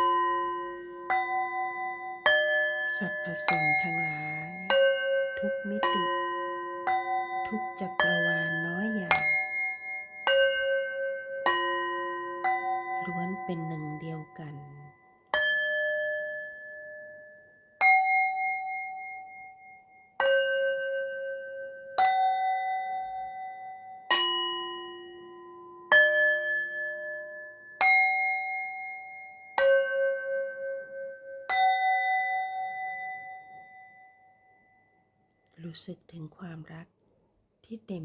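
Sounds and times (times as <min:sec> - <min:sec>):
struck bell tones: 0:00.0 - 0:17.0.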